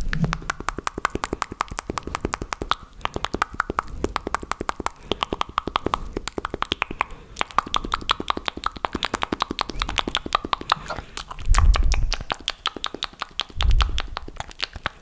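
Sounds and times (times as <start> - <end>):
wet mouth clicks and pops: 0.0 - 15.0.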